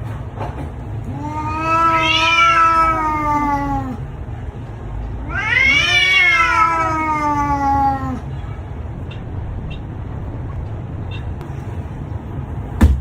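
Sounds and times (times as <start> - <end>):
low steady rumble: 0.8 - 13.0
cat meowing: 1.1 - 4.0, 5.2 - 8.3.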